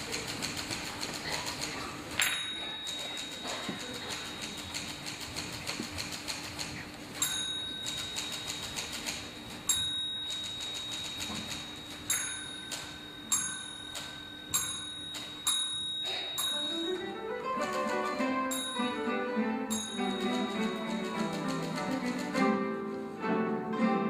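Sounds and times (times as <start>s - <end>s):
typewriter carriage bell ringing: 0.0s - 6.6s, 7.2s - 19.1s, 19.7s - 22.4s
plucked guitar ensemble: 16.7s - 24.0s.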